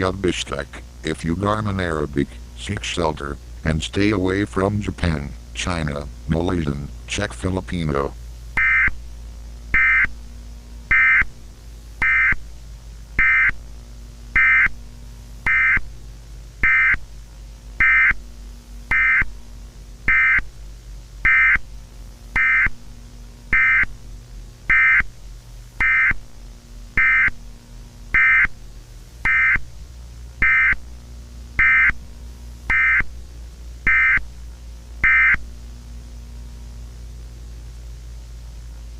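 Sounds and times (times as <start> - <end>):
steady low hum: 0.0 - 38.9
high electronic warning beeps: 14.4 - 14.7, 15.5 - 15.8, 16.6 - 17.0, 20.1 - 20.4, 22.4 - 22.7, 23.6 - 23.9, 27.0 - 27.3, 29.3 - 29.6, 31.6 - 32.0, 33.9 - 34.2.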